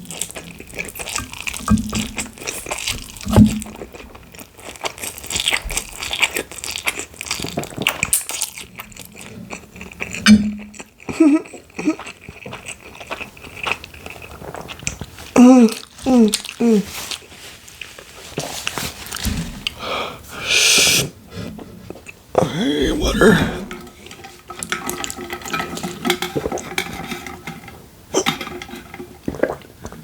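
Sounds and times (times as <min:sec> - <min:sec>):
chewing and crunching noodles: 0:00.0 - 0:19.8, 0:21.4 - 0:30.0
throat sounds: 0:22.4 - 0:24.2.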